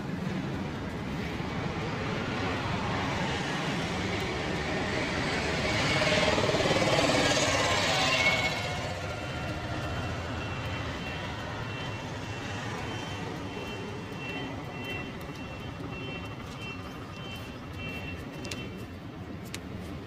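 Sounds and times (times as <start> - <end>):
street traffic noise: 0.0 - 20.0
high electronic beeping: 9.9 - 18.7.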